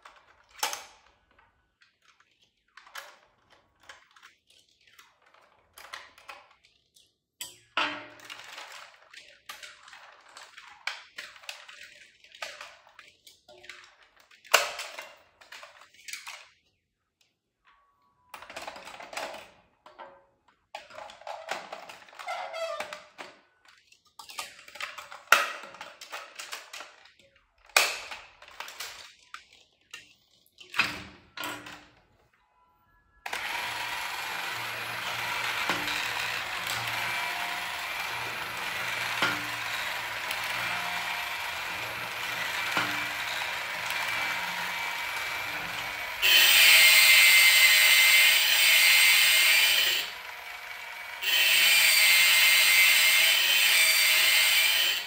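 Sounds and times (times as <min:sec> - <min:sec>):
plastic parts clicking and snapping: 0:00.0 - 0:32.3, 0:33.3 - 0:46.2
small motor and gearbox whirring: 0:33.2 - 0:55.0.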